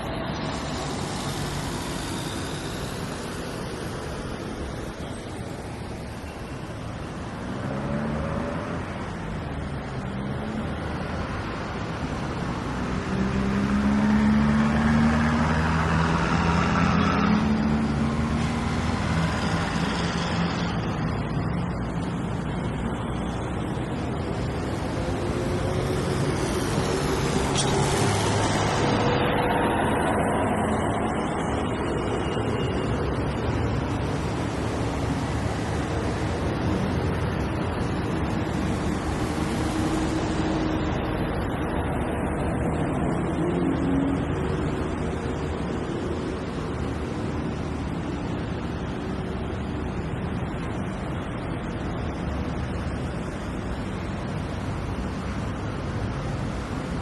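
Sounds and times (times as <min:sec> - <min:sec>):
engine hum: 0:00.0 - 0:57.0
road traffic passing: 0:00.0 - 0:57.0.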